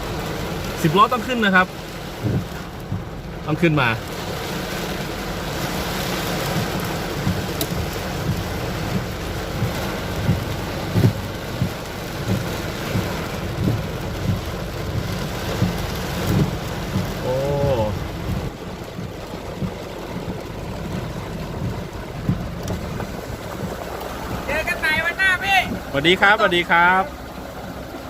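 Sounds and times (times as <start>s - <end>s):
heavy rain pouring: 0.0s - 28.0s
low thumps: 2.1s - 3.3s, 6.5s - 26.2s.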